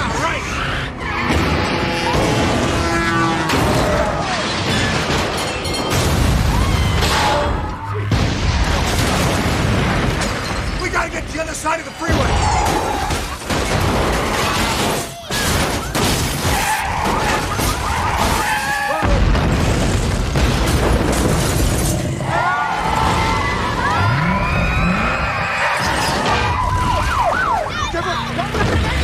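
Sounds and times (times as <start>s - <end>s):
debris crashing and shattering: 3.5s - 23.9s.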